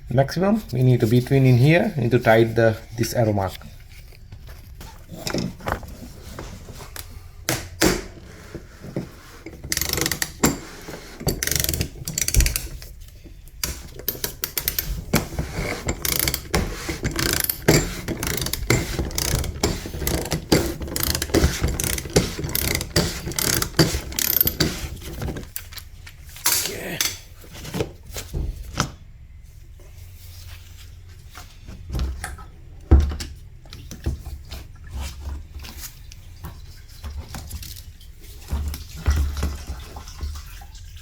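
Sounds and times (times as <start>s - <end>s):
ratchet wrench clicking: 9.7s - 10.6s, 11.3s - 12.7s, 15.9s - 24.8s.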